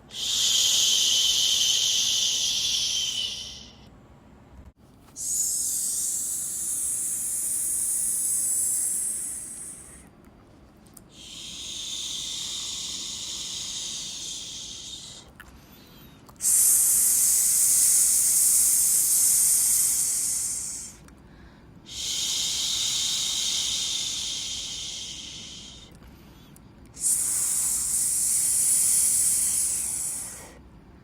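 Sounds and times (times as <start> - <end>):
person shushing: 5.2 - 10.0.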